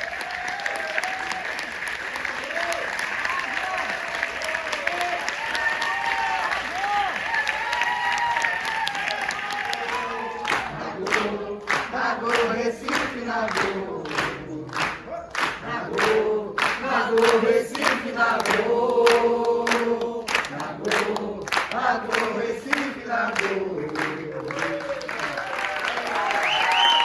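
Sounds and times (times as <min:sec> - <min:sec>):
crowd cheering: 0:00.0 - 0:27.0
group of voices singing: 0:09.9 - 0:25.4.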